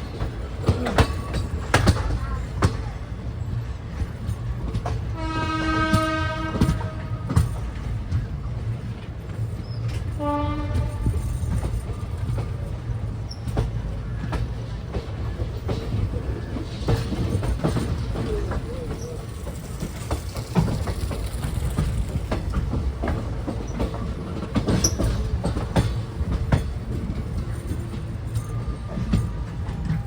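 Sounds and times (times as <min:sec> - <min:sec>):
train rumbling: 0:00.0 - 0:30.0
wheels clacking over rail joints: 0:00.0 - 0:30.0
train horn blasts: 0:05.2 - 0:07.4, 0:10.2 - 0:11.2.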